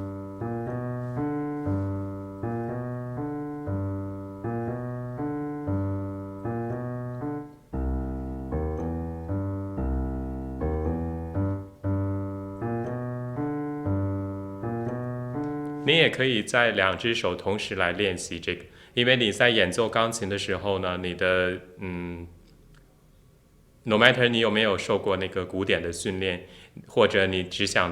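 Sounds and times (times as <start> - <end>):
piano blues walking bass: 0.0 - 16.7.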